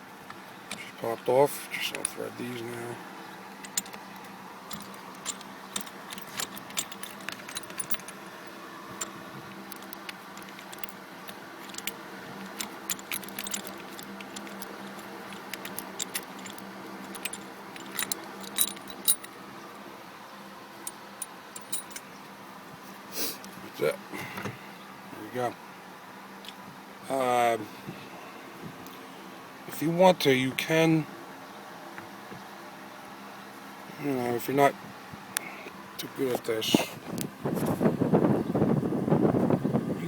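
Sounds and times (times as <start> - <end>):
metallic clicks of bolts and tools: 0.7 - 1.0, 3.6 - 19.4, 20.8 - 22.1.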